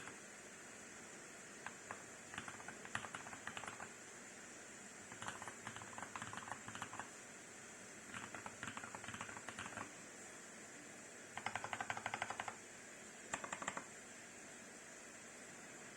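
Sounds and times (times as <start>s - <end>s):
steady hiss: 0.0s - 15.9s
mechanical keyboard typing: 1.6s - 3.9s, 5.1s - 7.1s, 8.1s - 9.9s, 11.4s - 12.6s, 13.3s - 13.9s.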